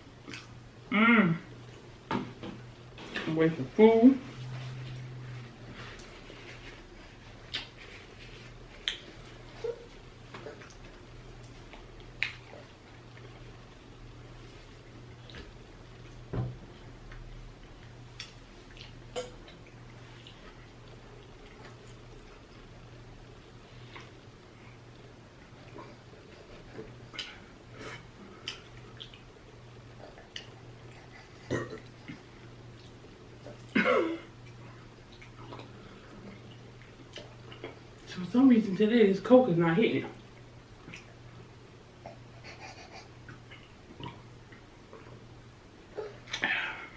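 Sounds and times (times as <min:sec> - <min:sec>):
steady low hum: 0:00.0 - 0:46.9
person burping: 0:00.9 - 0:01.5, 0:31.5 - 0:31.9, 0:33.7 - 0:34.3.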